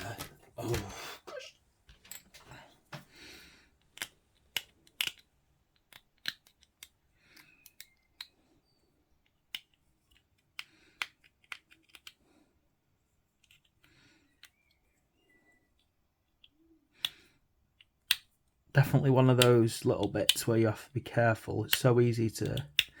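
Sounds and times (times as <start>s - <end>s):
plastic parts clicking: 3.8s - 8.4s, 9.1s - 12.3s, 13.4s - 14.9s, 15.7s - 20.6s, 21.7s - 23.0s.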